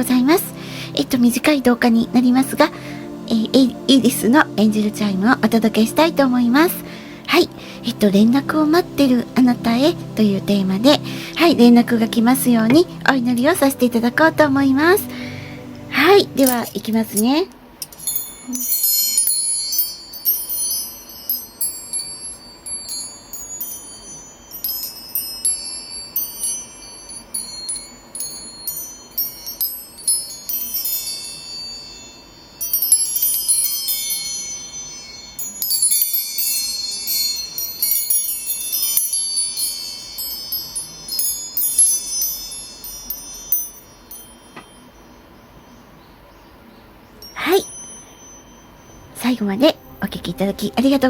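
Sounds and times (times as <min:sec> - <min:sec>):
chimes ringing: 0:00.0 - 0:51.0.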